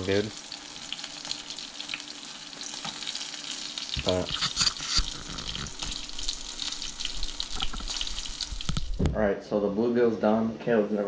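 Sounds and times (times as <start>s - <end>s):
fish sizzling in frying oil: 0.0s - 9.0s
oil pops and crackles: 3.9s - 9.0s.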